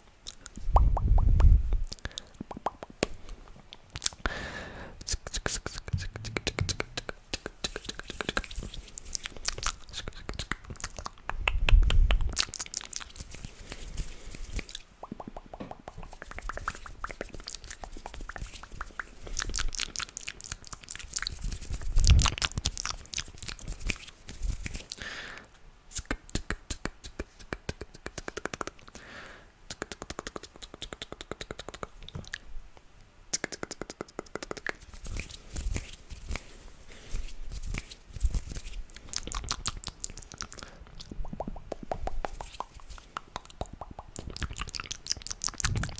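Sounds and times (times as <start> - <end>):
wet mouth clicks and crackles: 0.2 - 4.4, 5.0 - 25.0, 25.9 - 29.0, 29.7 - 45.9
low thumps: 5.8 - 7.2.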